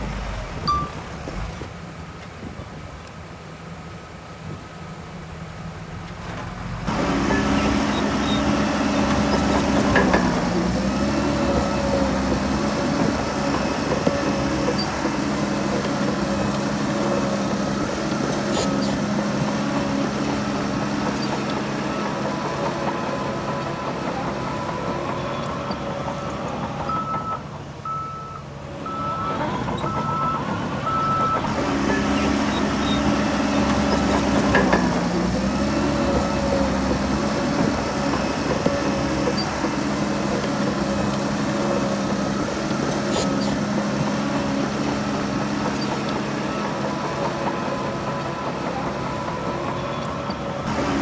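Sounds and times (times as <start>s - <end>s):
heavy diesel machinery running: 0.0s - 2.1s, 4.8s - 51.0s
reversing alarm beeps: 0.6s - 1.1s, 26.9s - 33.2s.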